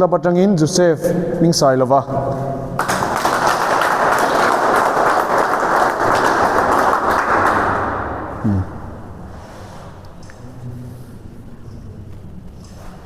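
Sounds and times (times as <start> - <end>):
audience applauding: 2.8 - 8.1.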